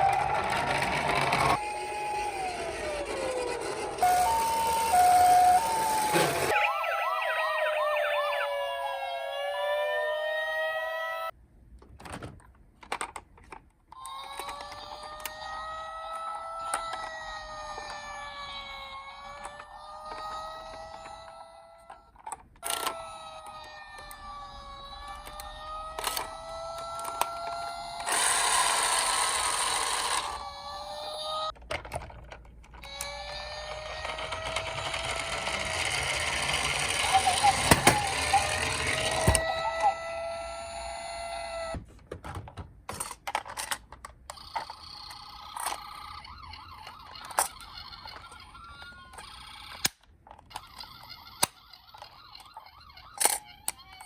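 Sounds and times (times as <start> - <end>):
toy electronic siren: 0.0 - 11.4, 14.0 - 31.6, 32.8 - 41.8, 44.3 - 49.9, 50.5 - 54.0
toys clicking and tapping: 12.5 - 54.0.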